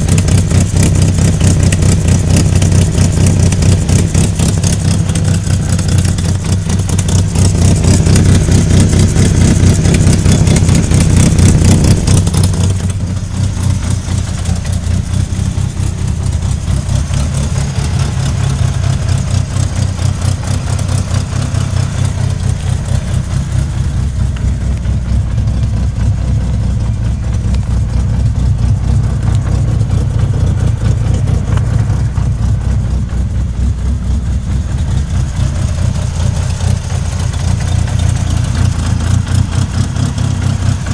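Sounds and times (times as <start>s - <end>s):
car engine revving and idling: 0.0s - 40.9s.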